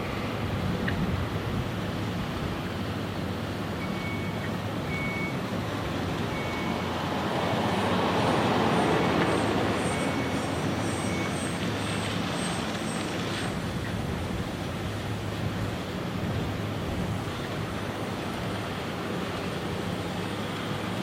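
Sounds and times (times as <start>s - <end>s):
heavy vehicle engine rumbling: 0.0s - 21.0s
backup alarm beeping: 3.8s - 5.4s, 6.3s - 6.9s.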